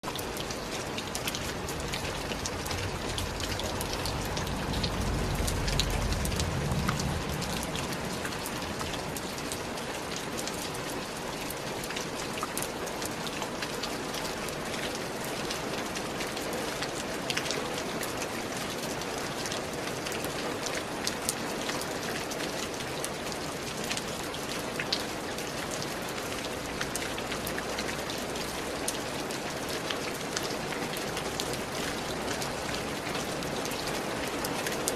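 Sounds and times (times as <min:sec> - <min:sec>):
raindrops ticking on hard surface: 0:00.0 - 0:34.9
steady rain: 0:00.0 - 0:34.9
low rumble: 0:01.5 - 0:09.7.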